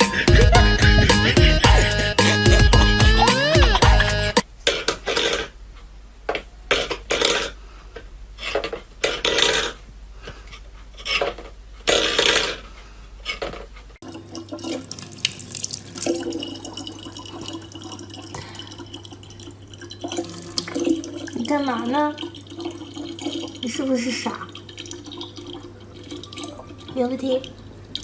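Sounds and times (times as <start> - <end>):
water running from tap: 14.0 - 28.0
water splashing and sloshing: 14.0 - 28.0.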